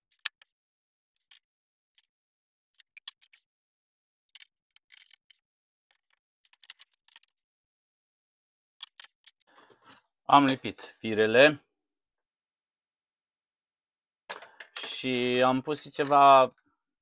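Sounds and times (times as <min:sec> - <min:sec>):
small parts clicking and tapping: 0:00.0 - 0:00.5, 0:01.1 - 0:03.5, 0:04.3 - 0:07.4, 0:08.8 - 0:09.9.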